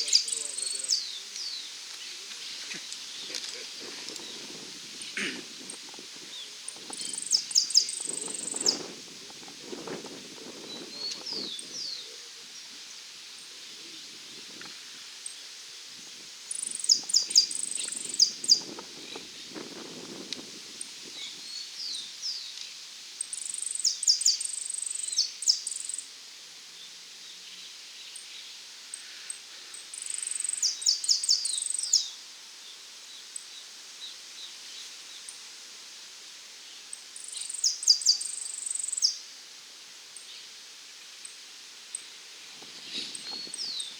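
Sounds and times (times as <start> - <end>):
finch singing: 0.0 - 1.6, 6.4 - 8.9.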